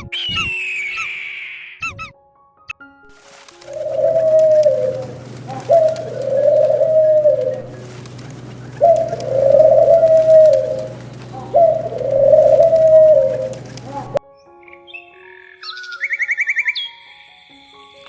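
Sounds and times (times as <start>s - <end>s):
bird calling: 0.0s - 1.9s, 3.6s - 14.2s
steady low hum: 3.7s - 14.2s.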